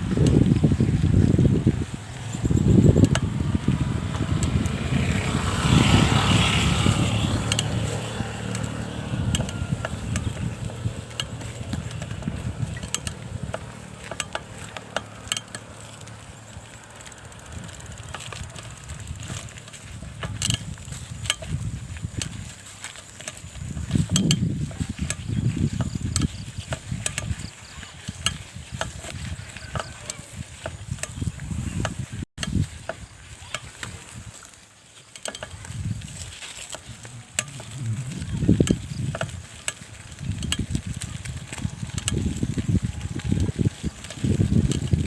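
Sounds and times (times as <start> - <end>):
bicycle clicking and rattling: 0.0 - 45.0
low rumbling noise: 37.0 - 45.0.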